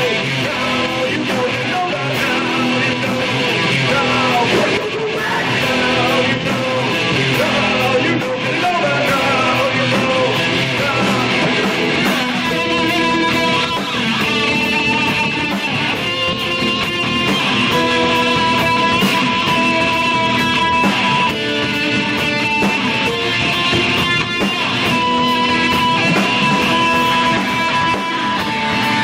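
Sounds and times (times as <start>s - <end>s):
electric guitar: 0.0s - 29.0s
live rock band playing: 0.0s - 29.0s.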